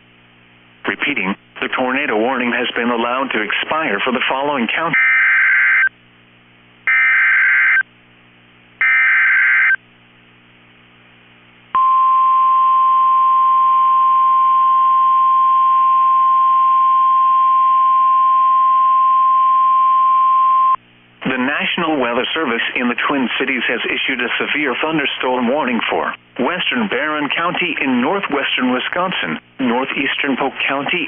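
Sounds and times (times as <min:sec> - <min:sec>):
steady high alarm tone: 0:05.0 - 0:05.9, 0:06.9 - 0:07.8, 0:08.8 - 0:09.8.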